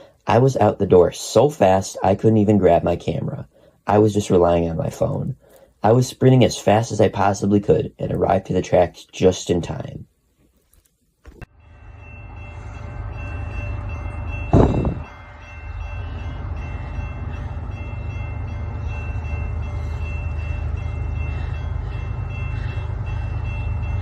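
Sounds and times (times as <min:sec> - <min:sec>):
freight train rumble: 0:11.4 - 0:24.0
loud thump: 0:14.5 - 0:15.1.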